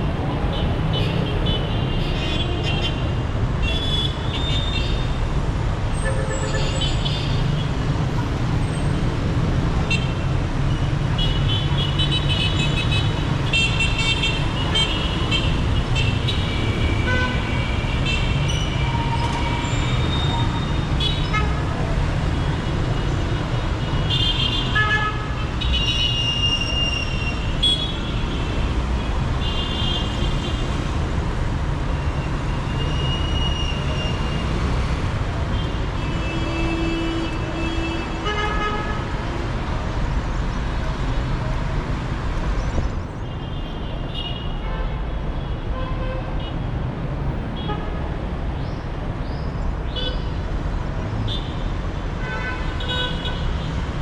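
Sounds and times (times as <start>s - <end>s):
traffic engine rumble: 0.0s - 45.6s.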